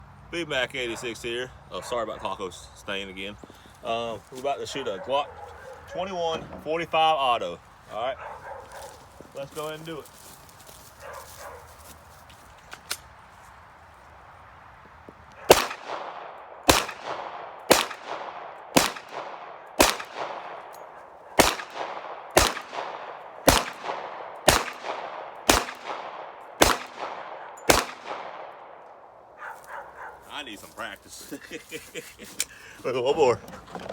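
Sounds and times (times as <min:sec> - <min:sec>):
pistol shots with echo: 0:15.5 - 0:29.1.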